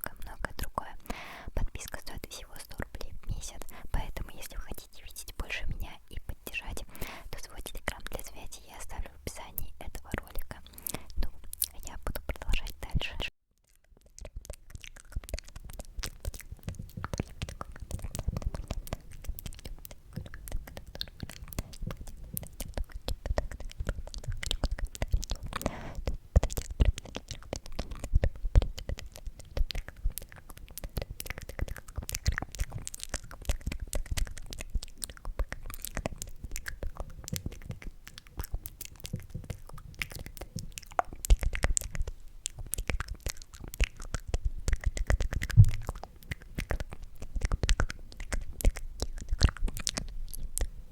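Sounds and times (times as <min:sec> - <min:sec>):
wet mouth clicks and smacks: 0:00.0 - 0:50.9
soft low thumps: 0:45.4 - 0:46.0.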